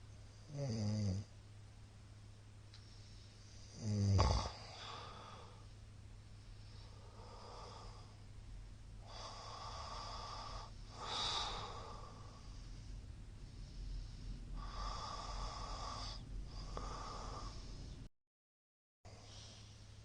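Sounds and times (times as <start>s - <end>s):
man snoring: 0.4s - 1.3s, 3.6s - 5.6s, 7.0s - 8.1s, 9.0s - 12.6s, 14.6s - 17.8s
noisy breaths: 2.7s - 3.8s, 4.5s - 18.1s, 19.1s - 20.0s.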